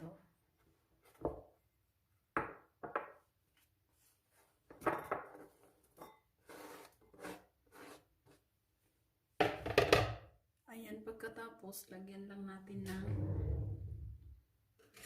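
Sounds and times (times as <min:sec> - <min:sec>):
scraping on cutting board: 0:06.4 - 0:08.4.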